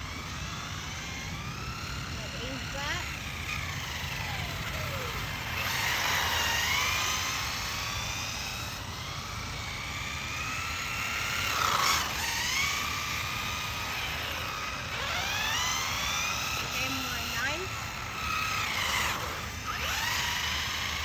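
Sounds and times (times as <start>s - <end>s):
toy car electric motors whining: 0.0s - 21.0s.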